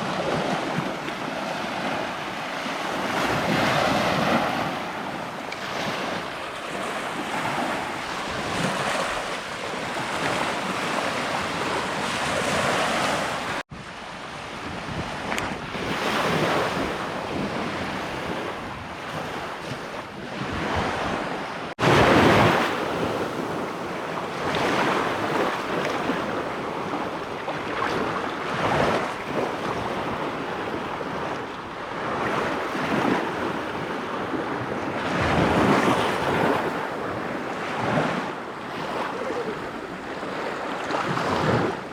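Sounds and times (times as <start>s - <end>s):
surf washing onto beach: 0.0s - 19.6s
wind buffeting microphone: 0.0s - 41.9s.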